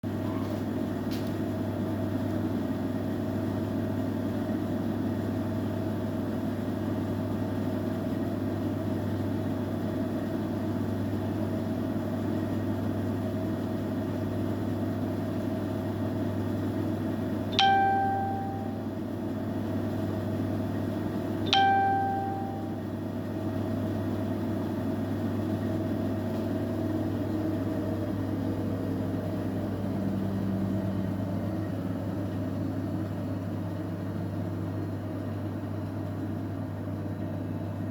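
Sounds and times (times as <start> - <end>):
washing machine humming: 0.0 - 37.9.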